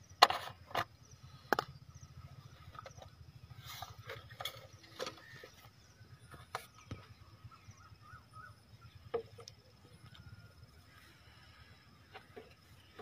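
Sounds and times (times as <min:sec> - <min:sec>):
faint steady high tone: 0:07.4 - 0:11.2.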